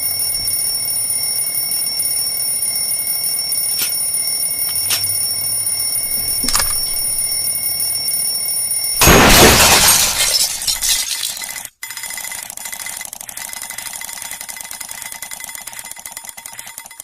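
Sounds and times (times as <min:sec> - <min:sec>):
alarm clock ringing: 0:00.0 - 0:09.0, 0:11.4 - 0:17.0
loud crash: 0:09.0 - 0:10.8.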